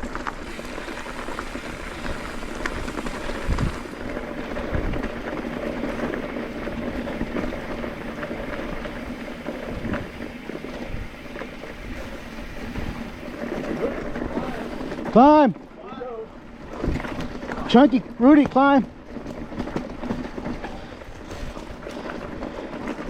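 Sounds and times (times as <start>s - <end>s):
wind on microphone: 0.0s - 5.3s, 6.8s - 13.4s
bike rattle: 0.0s - 23.0s
bike tyres rumbling on dirt: 0.0s - 23.0s.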